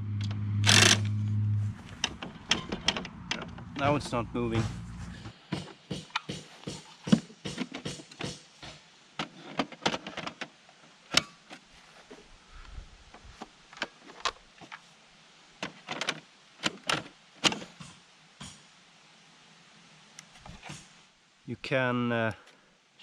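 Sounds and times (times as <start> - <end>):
plastic parts clicking and knocking: 1.9 - 3.8, 5.5 - 11.6, 15.6 - 17.9.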